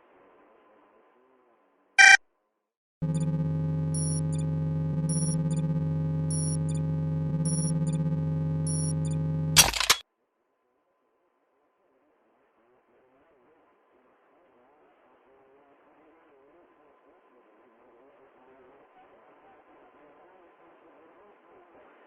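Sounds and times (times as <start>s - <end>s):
electronic chirp: 2.0s - 2.2s, 3.0s - 10.0s
short high beeps: 2.0s - 2.2s, 3.0s - 10.0s
steady electronic hum: 3.0s - 10.0s.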